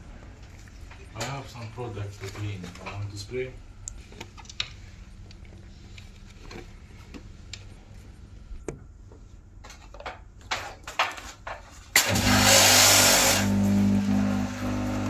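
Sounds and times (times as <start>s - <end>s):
water jet hissing: 12.0s - 14.8s
pressure washer pump humming: 12.0s - 15.0s.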